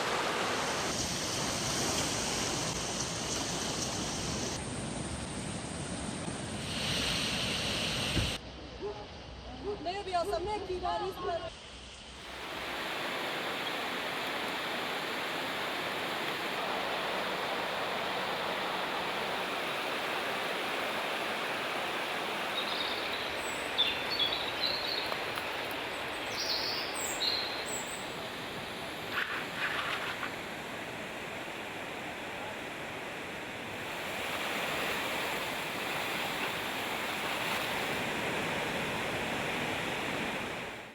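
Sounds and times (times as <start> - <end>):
floodwater rushing: 12.2 - 40.9.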